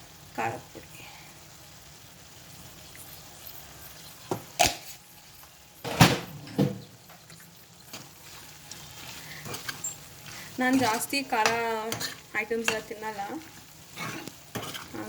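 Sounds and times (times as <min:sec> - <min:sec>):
faint sizzle of frying: 0:00.0 - 0:15.0
spoon knocking on pan: 0:10.8 - 0:13.0.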